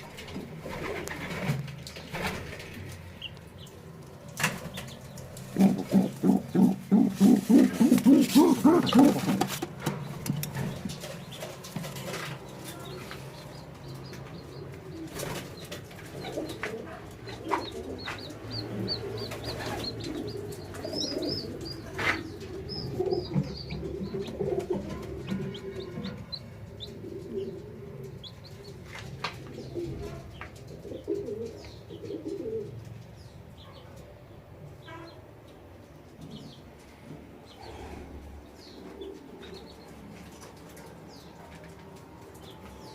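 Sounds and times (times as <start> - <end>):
chicks peeping: 0.0 - 42.9
pigeon cooing: 5.4 - 9.8, 12.2 - 32.9.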